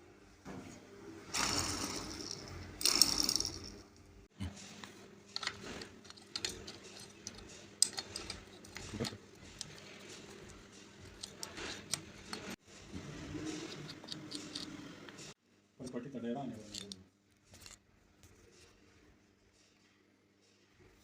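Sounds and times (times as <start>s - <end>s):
metal parts and tools clinking: 1.4s - 3.8s, 5.3s - 12.6s, 13.4s - 15.3s, 16.6s - 17.9s.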